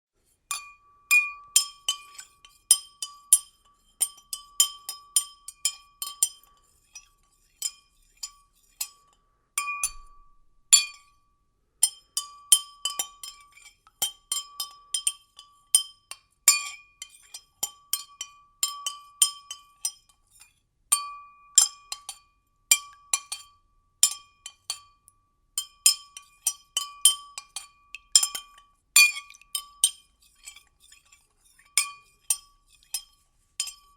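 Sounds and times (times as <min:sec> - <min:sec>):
spoon clinking in a glass: 0:00.5 - 0:11.1, 0:11.8 - 0:20.2, 0:25.6 - 0:33.9
glass ringing: 0:09.6 - 0:11.0.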